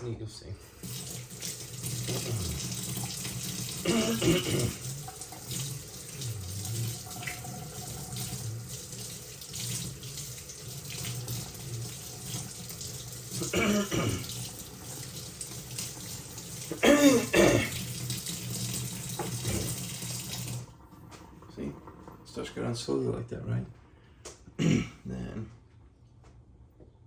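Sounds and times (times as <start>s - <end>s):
tap running into sink: 14.0s - 21.3s.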